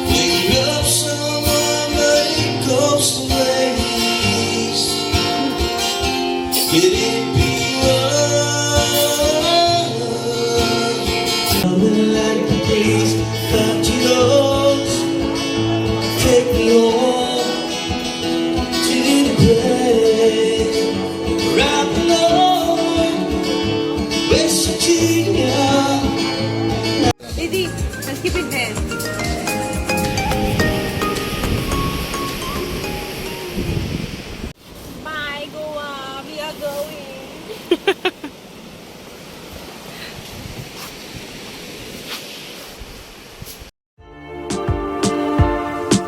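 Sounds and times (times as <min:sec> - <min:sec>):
person singing: 0:00.0 - 0:17.8, 0:44.2 - 0:46.0
guitar: 0:00.0 - 0:34.2, 0:44.0 - 0:46.0
steady bass line: 0:27.2 - 0:32.4.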